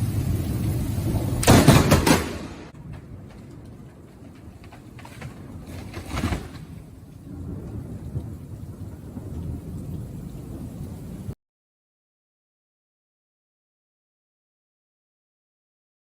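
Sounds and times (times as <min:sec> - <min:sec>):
loud thunderclap: 0:00.0 - 0:04.2, 0:05.3 - 0:11.4
low thunder rumbling: 0:00.0 - 0:11.4
rain: 0:00.0 - 0:11.4.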